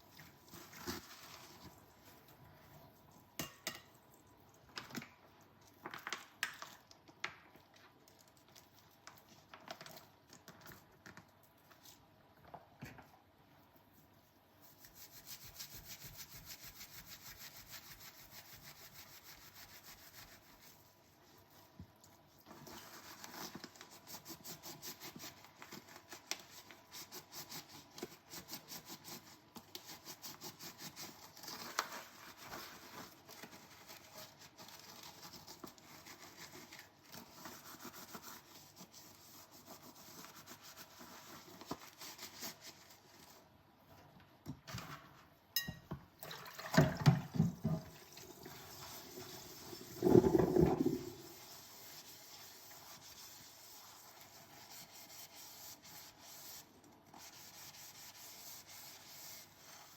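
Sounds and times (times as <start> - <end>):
dishes being scrubbed: 45.6 - 59.9.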